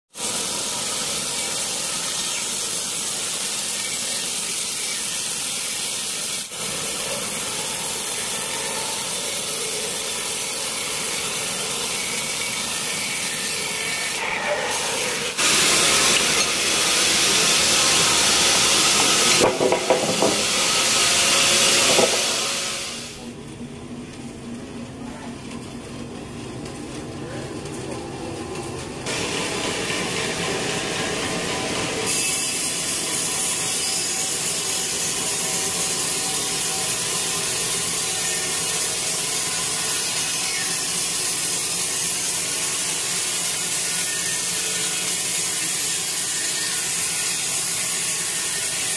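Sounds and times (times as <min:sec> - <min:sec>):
band saw cutting log: 0:00.2 - 0:23.2.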